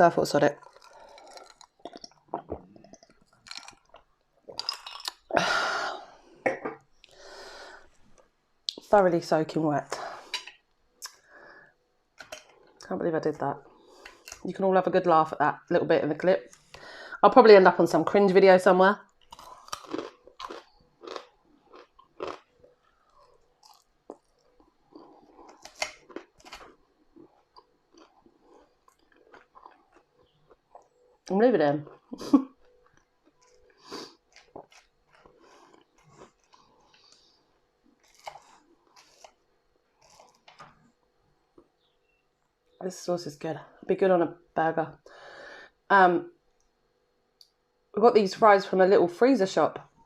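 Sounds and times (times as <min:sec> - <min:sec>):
chewing and crunching food: 0:00.3 - 0:05.3, 0:12.2 - 0:14.5, 0:19.0 - 0:41.8.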